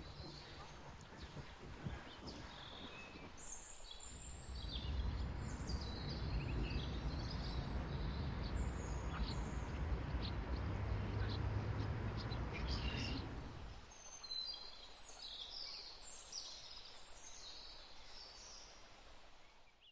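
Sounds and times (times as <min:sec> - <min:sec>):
birds chirping: 0:00.0 - 0:16.8
low rumble: 0:04.2 - 0:13.7.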